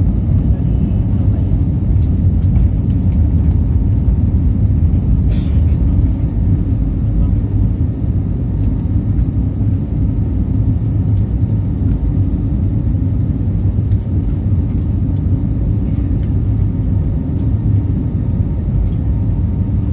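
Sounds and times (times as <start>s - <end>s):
airliner taking off: 0.0s - 19.9s.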